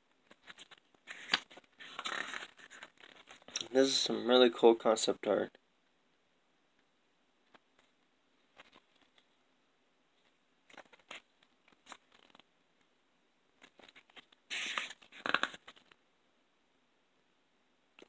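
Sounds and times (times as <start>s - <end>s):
paper rustling: 0.2s - 3.6s, 8.5s - 9.3s, 10.7s - 12.5s, 13.6s - 16.0s.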